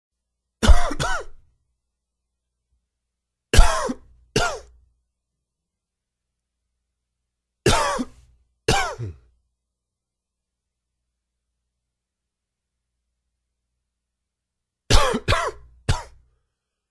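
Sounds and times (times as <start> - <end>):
man coughing: 0.6 - 1.4, 3.6 - 4.8, 7.7 - 9.3, 14.9 - 16.2.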